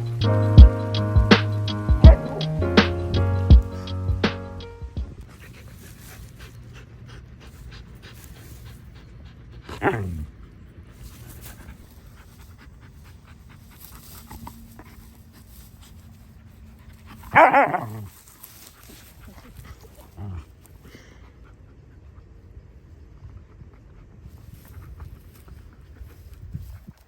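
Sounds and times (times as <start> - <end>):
dog panting: 5.0 - 27.0
dog vocal call: 9.7 - 10.3, 17.3 - 18.0.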